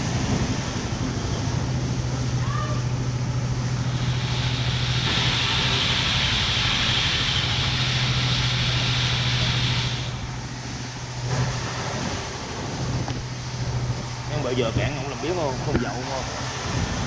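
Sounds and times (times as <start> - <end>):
engine running with low hum: 0.0 - 17.0
hiss: 3.8 - 10.4.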